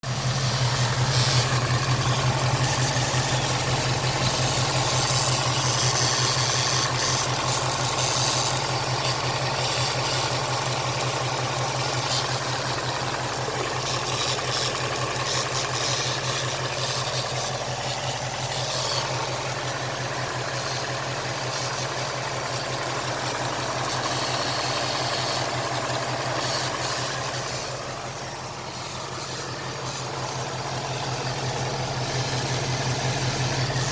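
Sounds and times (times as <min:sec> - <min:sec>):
car engine idling: 0:00.0 - 0:33.9.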